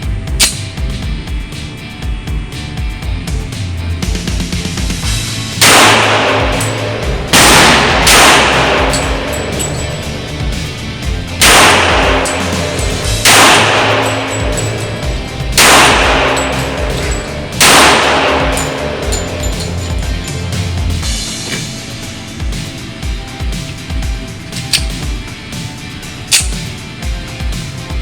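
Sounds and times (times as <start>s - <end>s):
background music: 0.0s - 28.0s
pistol shots with ringing echo: 5.6s - 10.8s, 11.4s - 20.0s, 26.3s - 26.7s.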